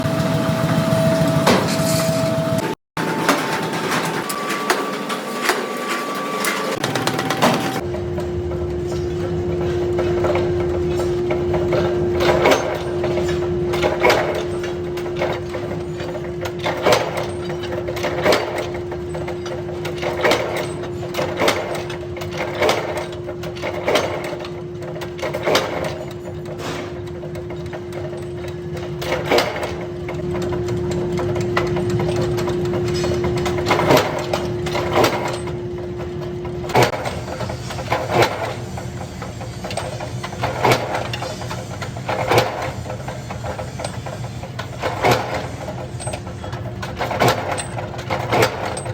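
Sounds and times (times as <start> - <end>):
machine hum: 0.0 - 16.8
metal knocks and clanks: 3.0 - 48.9.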